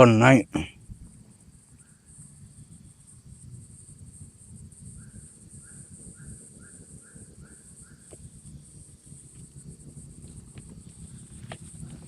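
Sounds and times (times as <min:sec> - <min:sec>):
short repeating call: 0:00.0 - 0:00.7
crickets chirring: 0:00.0 - 0:12.0.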